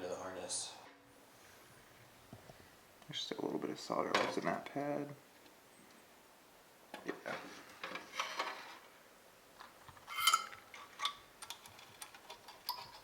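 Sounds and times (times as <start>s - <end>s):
hand tools clicking and scraping: 9.6s - 13.0s.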